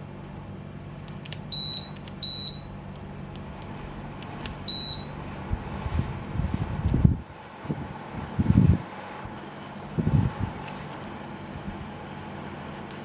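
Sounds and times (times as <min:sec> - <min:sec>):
air conditioner humming: 0:00.0 - 0:13.0
short high-pitched beeps: 0:01.5 - 0:02.7, 0:04.7 - 0:05.2.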